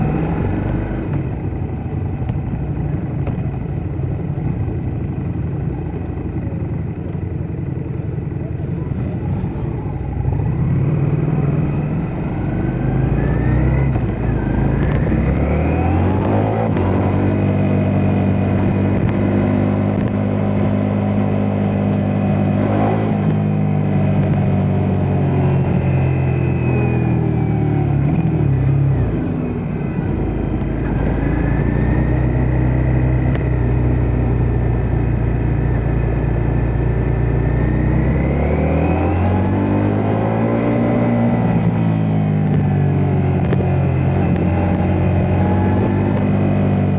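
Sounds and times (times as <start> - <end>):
motorcycle engine accelerating: 0.0 - 46.9.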